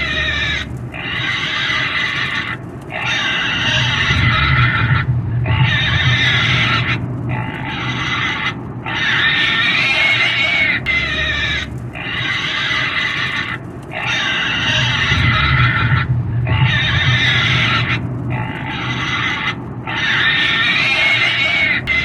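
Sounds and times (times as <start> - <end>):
pig squealing: 0.0 - 22.0.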